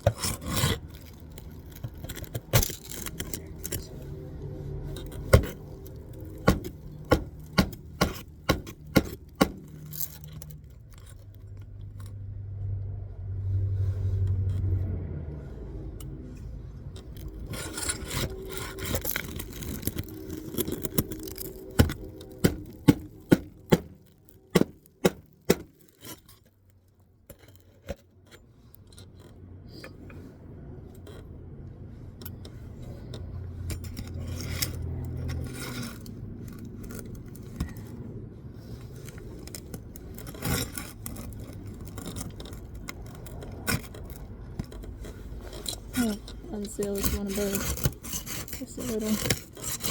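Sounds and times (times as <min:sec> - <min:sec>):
scraping of shingles and tools: 0:00.0 - 0:12.3, 0:13.6 - 0:49.9
low rumble: 0:00.2 - 0:08.4
hammer striking nails: 0:06.4 - 0:10.0, 0:21.8 - 0:25.8.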